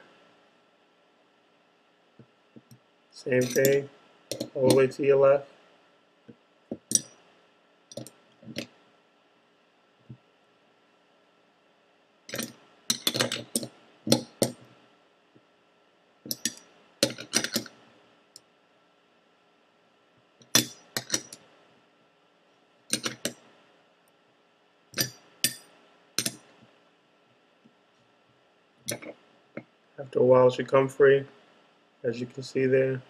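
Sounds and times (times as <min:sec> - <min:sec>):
metal wrench clinking: 0:03.4 - 0:04.8, 0:16.3 - 0:17.7, 0:20.6 - 0:21.4, 0:25.0 - 0:26.4.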